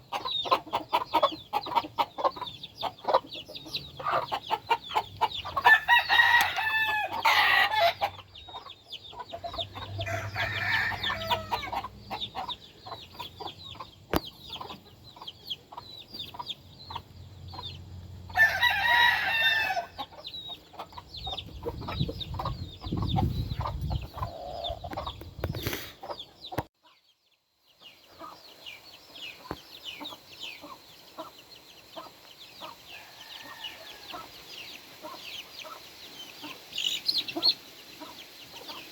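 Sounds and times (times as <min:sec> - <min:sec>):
chickens clucking: 0:00.0 - 0:27.1, 0:27.8 - 0:38.9
roosters crowing: 0:04.0 - 0:08.4, 0:09.2 - 0:13.0, 0:18.2 - 0:20.9, 0:32.8 - 0:34.6.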